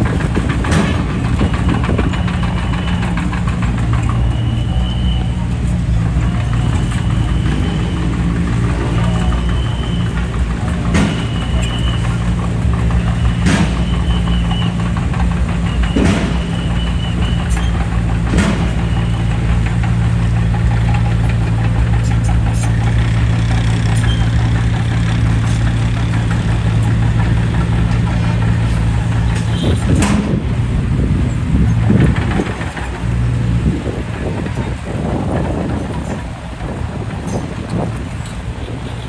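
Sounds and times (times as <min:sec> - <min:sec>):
high squeak: 0:00.0 - 0:30.4
sharp metal clanks: 0:00.0 - 0:34.6
bulldozer diesel engine running: 0:00.0 - 0:39.0.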